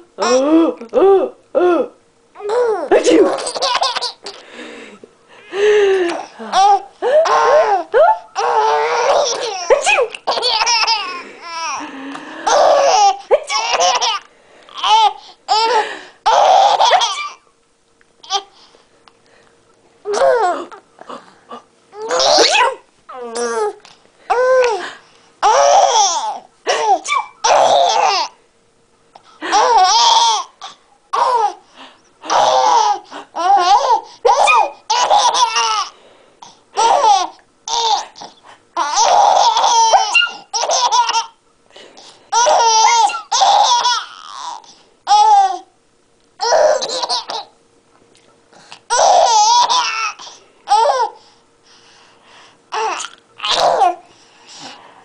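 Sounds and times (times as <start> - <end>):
baby laughing: 2.4 - 4.4, 6.1 - 11.8, 12.4 - 17.4, 18.2 - 18.5, 22.0 - 22.8, 25.4 - 28.4, 29.4 - 31.6, 32.3 - 35.9, 36.8 - 41.4, 42.3 - 45.6, 46.4 - 47.5, 48.9 - 51.2, 52.7 - 54.0.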